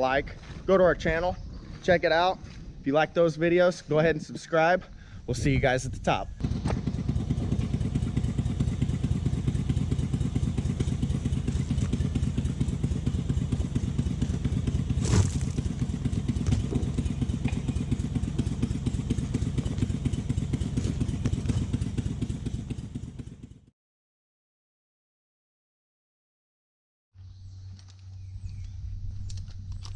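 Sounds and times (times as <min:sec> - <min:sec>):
engine idling: 0:06.4 - 0:23.6.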